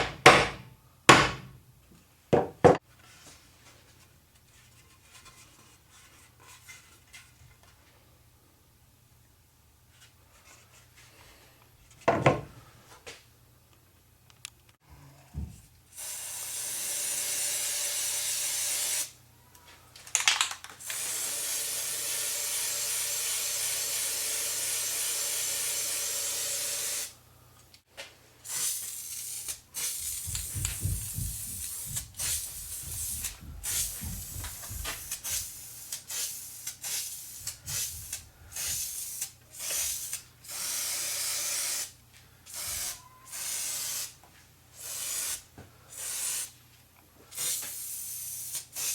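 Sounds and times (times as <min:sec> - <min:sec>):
aerosol spray can spraying: 0:16.0 - 0:19.1, 0:20.8 - 0:27.2, 0:28.5 - 0:41.9, 0:42.5 - 0:44.2, 0:44.8 - 0:46.5, 0:47.4 - 0:48.9.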